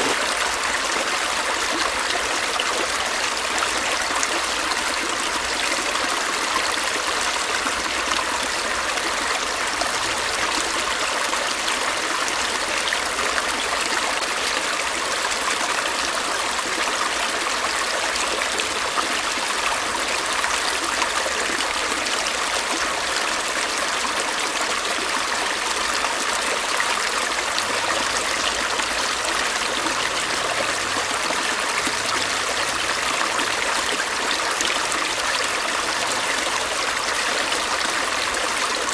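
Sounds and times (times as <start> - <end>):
stream water over stones: 0.0 - 38.9.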